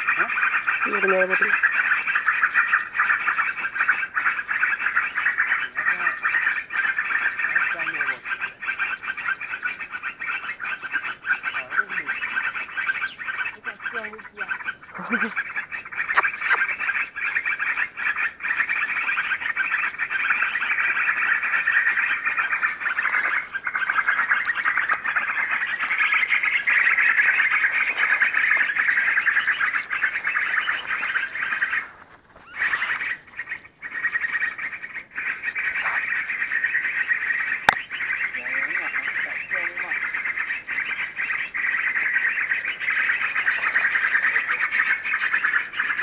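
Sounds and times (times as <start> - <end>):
chorus of high-pitched animal calls: 0.0 - 46.0
sharp clicks: 16.1 - 16.6.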